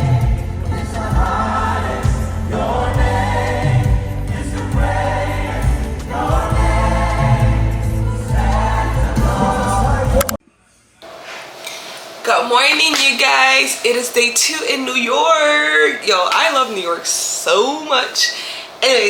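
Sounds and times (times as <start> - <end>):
choir singing gospel music: 0.0 - 10.4
strong steady bass: 0.0 - 10.4.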